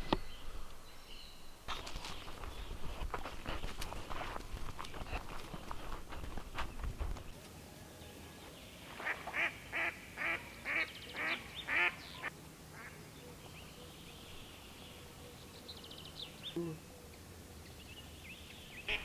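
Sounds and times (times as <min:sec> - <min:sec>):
bird harsh calls: 0:08.9 - 0:19.0.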